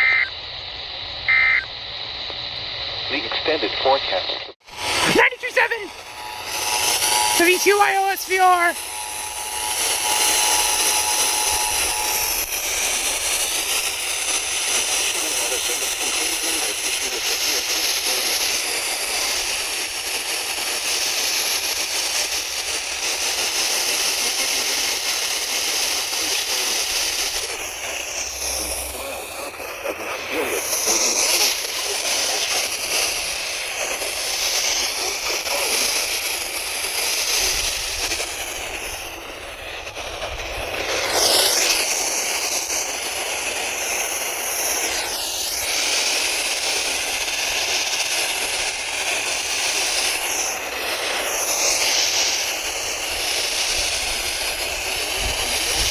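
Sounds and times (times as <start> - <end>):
radio static hiss: 0.0 - 55.9.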